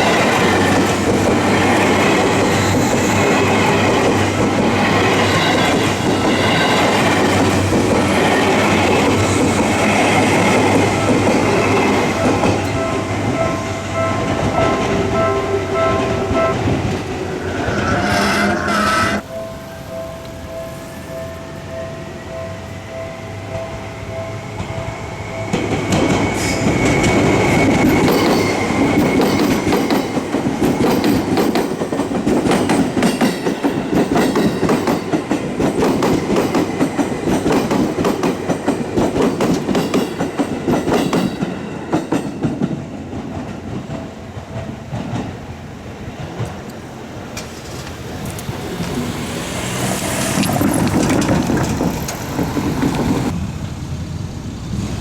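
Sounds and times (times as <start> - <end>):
electric train passing: 0.0 - 55.0
wheels clattering over rail joints: 47.4 - 53.4.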